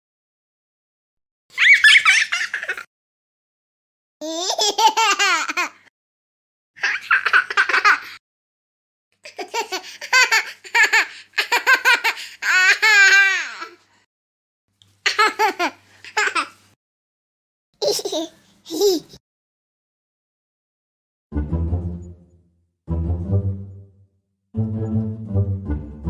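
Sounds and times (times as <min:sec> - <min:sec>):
high-pitched giggling laughter: 0:01.6 - 0:02.9.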